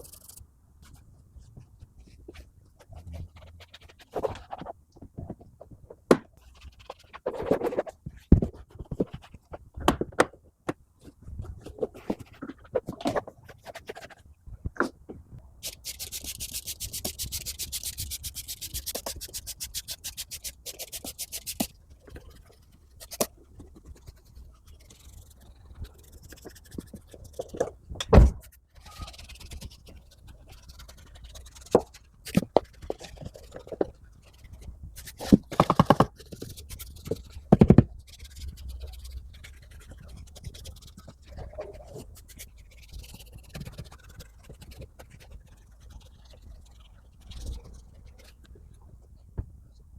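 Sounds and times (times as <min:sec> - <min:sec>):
brush scrubbing a surface: 0:15.6 - 0:27.7, 0:28.8 - 0:48.4.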